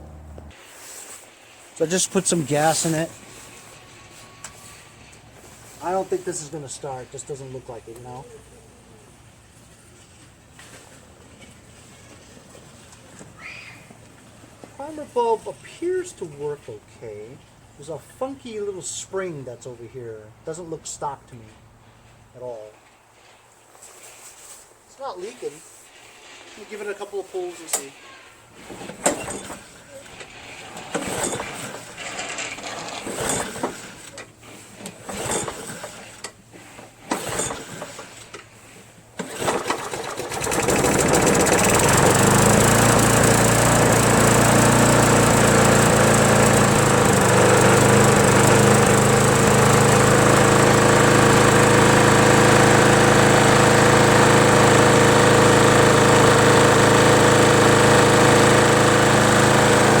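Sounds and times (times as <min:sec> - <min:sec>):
lawn mower engine running: 0:00.0 - 0:00.6, 0:01.8 - 0:07.0, 0:30.0 - 1:00.0
recoil starter pulls: 0:01.8 - 0:03.6, 0:28.6 - 1:00.0.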